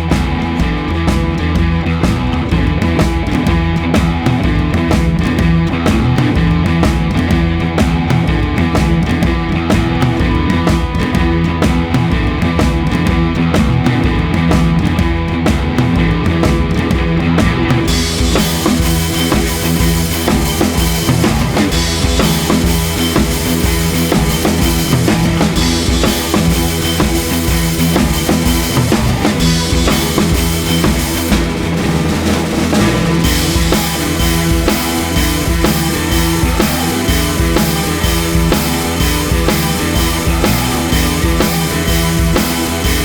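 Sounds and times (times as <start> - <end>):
rock music with drums and guitar: 0.0 - 43.0
cymbals: 17.9 - 43.0.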